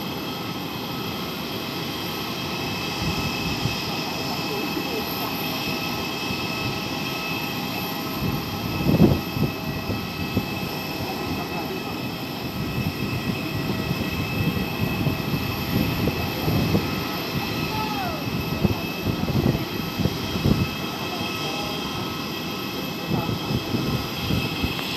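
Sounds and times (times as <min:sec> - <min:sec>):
airliner engines whining: 0:00.0 - 0:24.9.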